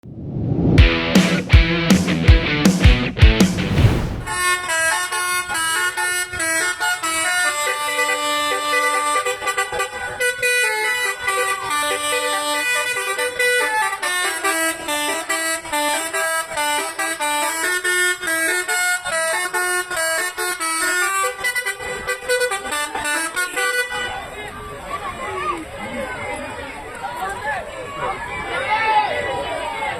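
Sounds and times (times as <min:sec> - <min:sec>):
tuned air horns playing a tune: 0:04.3 - 0:24.3.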